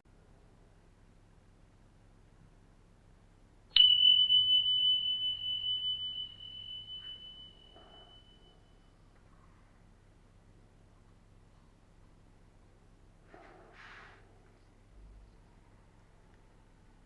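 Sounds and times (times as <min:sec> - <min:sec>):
high ringing tone: 0:03.8 - 0:09.0.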